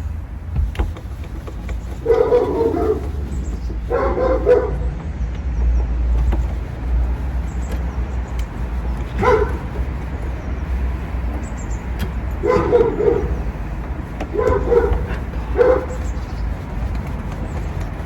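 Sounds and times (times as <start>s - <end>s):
big dog barking: 1.9s - 5.0s, 9.1s - 9.9s, 12.4s - 16.4s.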